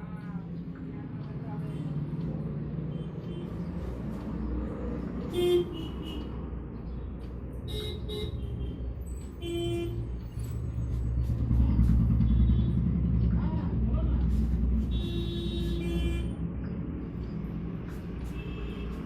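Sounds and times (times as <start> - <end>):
low traffic rumble: 0.0 - 19.0
vehicle horn toots: 7.7 - 8.8, 14.9 - 16.4.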